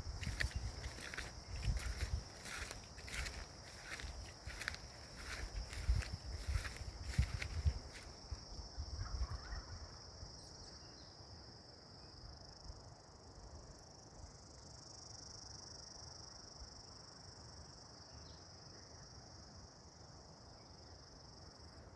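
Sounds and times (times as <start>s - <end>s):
insects chirring: 0.0s - 12.8s.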